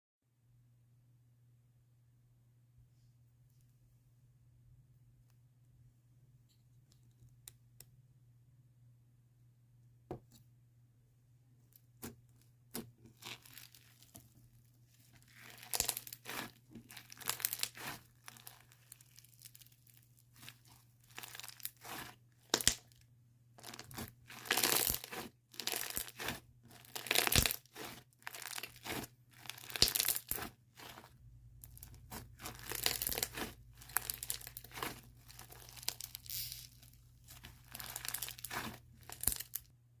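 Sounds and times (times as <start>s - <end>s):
slime squishing by hand: 11.8s - 39.7s.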